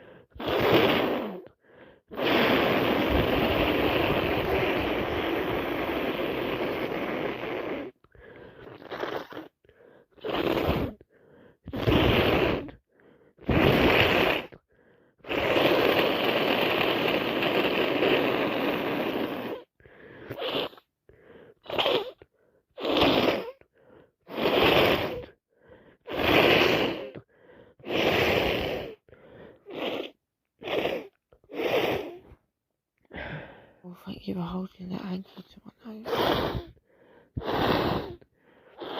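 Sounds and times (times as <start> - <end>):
person blowing nose: 0.0 - 14.6, 15.2 - 32.4, 36.0 - 38.9.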